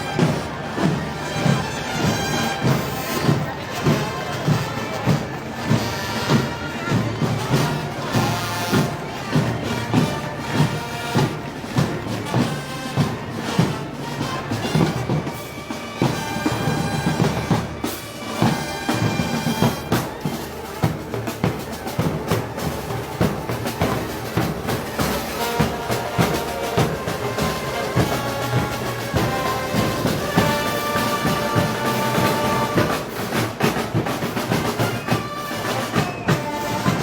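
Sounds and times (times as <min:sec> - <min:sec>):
brass band playing: 0:00.0 - 0:37.0
drum strokes: 0:00.0 - 0:37.0.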